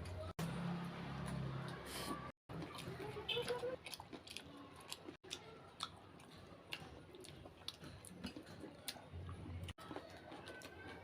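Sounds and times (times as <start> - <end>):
person chewing crunchy food: 2.5 - 11.0.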